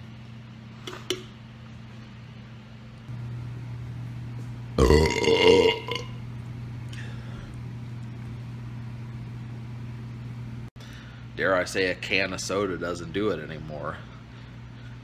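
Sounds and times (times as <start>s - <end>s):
steady low hum: 0.0s - 15.0s
loud drawn-out belch: 4.8s - 6.2s.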